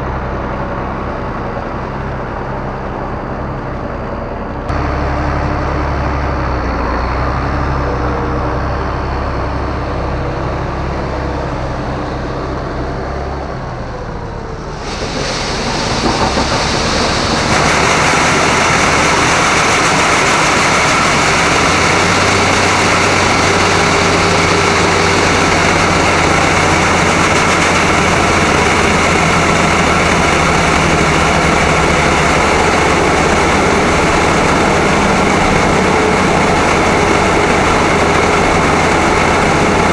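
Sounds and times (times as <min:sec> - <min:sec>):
heavy machinery engine running: 0:00.0 - 0:39.9
rushing machine noise: 0:14.2 - 0:39.9.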